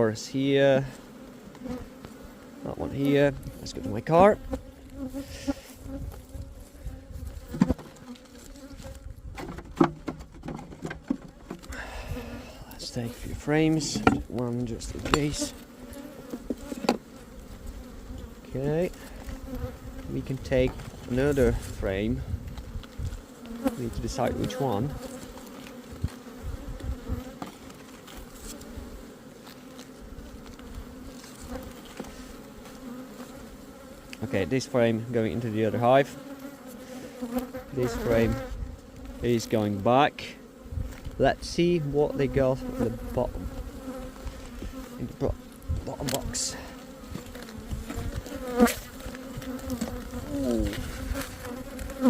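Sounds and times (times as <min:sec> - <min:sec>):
bees buzzing: 0:00.0 - 0:52.0.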